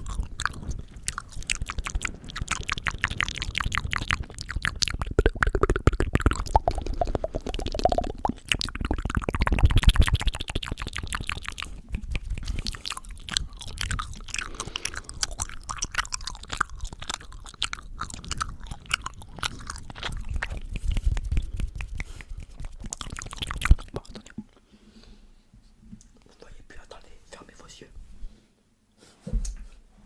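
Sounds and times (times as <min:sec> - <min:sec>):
mouth squelching: 0:00.0 - 0:24.5
lip smacks: 0:00.0 - 0:24.6
wet tongue clicks: 0:00.0 - 0:24.6.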